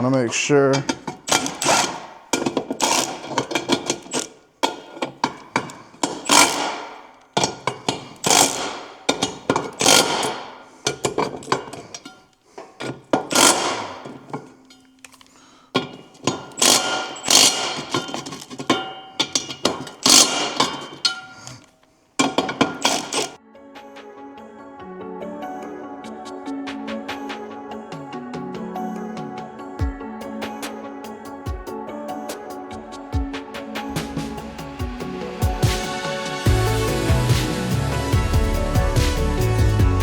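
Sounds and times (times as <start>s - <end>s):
metal knocks and clanks: 0.6s - 14.9s, 15.8s - 23.4s.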